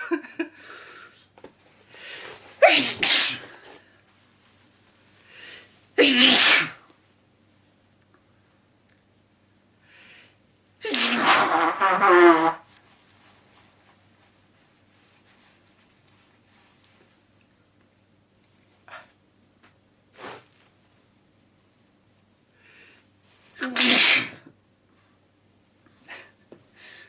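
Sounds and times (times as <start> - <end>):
person sneezing: 2.6 - 3.6, 6.0 - 6.8, 10.8 - 11.9, 23.6 - 24.5.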